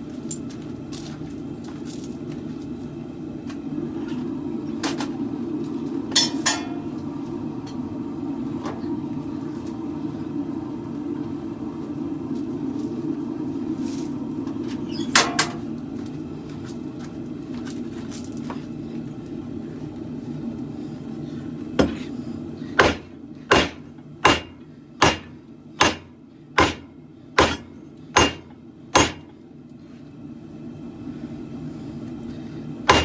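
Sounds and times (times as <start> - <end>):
steady low roar: 3.6 - 17.5
hammer striking steel on anvil: 6.1 - 6.9, 22.8 - 29.3.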